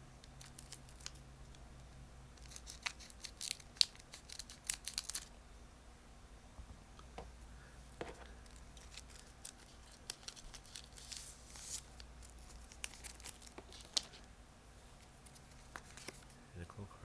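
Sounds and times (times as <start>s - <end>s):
foil wrapper tearing and crinkling: 0.4s - 1.2s, 2.4s - 5.3s, 8.5s - 14.3s.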